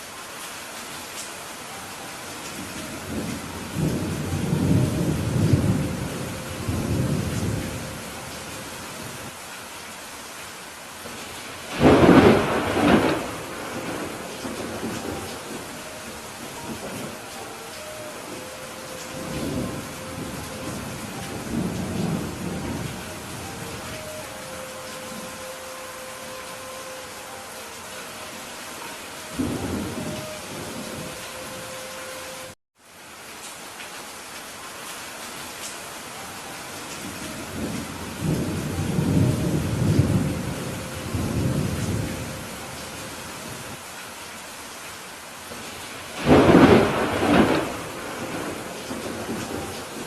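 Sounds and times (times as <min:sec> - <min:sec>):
heavy rain: 0:00.0 - 0:50.0
rolling thunder rumble: 0:02.6 - 0:09.3, 0:11.7 - 0:25.5, 0:46.2 - 0:50.0.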